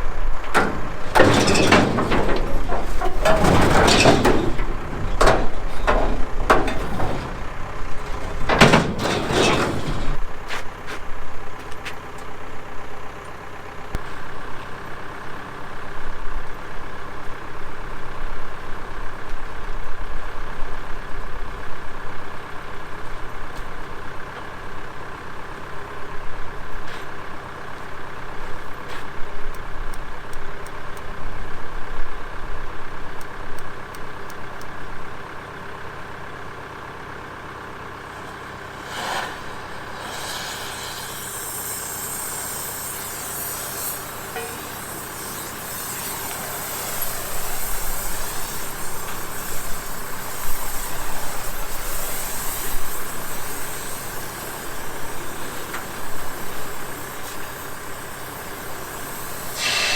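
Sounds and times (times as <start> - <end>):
tractor engine running: 0.0 - 19.6, 27.2 - 59.9
hiss: 38.2 - 59.9.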